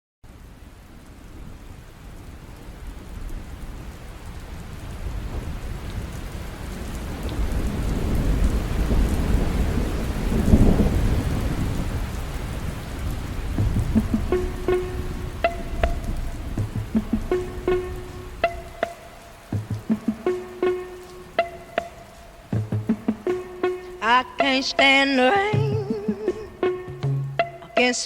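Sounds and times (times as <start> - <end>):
steady rain: 0.2 - 28.0
rolling thunder: 4.9 - 23.9.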